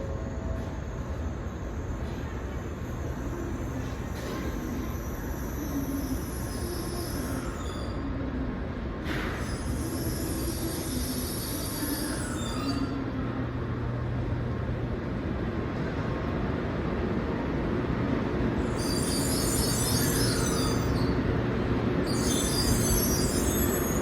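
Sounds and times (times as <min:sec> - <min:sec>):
train rolling low hum: 0:00.0 - 0:24.0
high-pitched wheel squeal: 0:03.2 - 0:08.2, 0:09.1 - 0:13.2, 0:18.6 - 0:21.2, 0:22.0 - 0:24.0.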